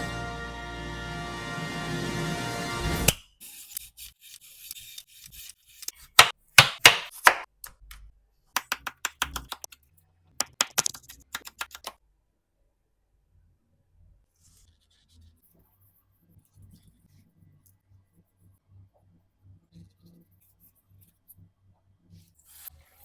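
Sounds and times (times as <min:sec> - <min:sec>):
background music: 0:00.0 - 0:03.1
knife cutting potato: 0:03.1 - 0:07.5, 0:08.6 - 0:09.8, 0:10.4 - 0:11.9.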